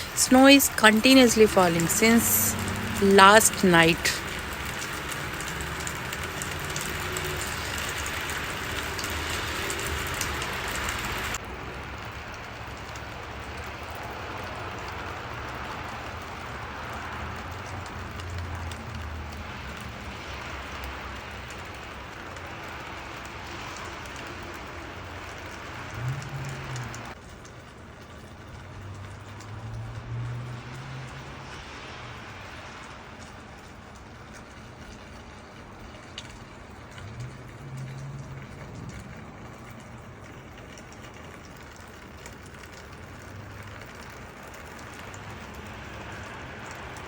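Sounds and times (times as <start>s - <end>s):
vehicle engine passing: 0.0s - 11.4s, 25.4s - 27.2s, 28.8s - 32.0s.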